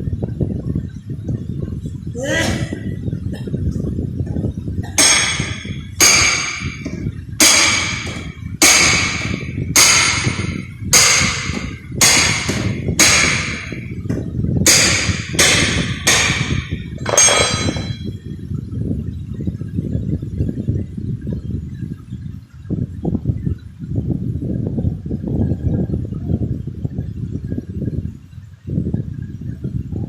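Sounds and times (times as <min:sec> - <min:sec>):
steady low rumble: 0:00.0 - 0:30.0
hammer striking sheet metal: 0:04.9 - 0:18.1.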